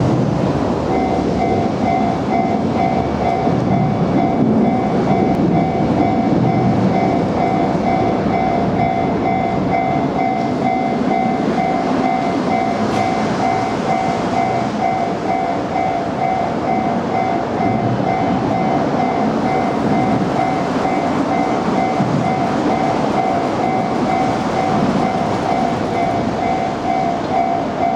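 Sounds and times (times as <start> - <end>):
freight train rumbling past: 0.0 - 27.9
level crossing electronic bell: 7.0 - 27.9.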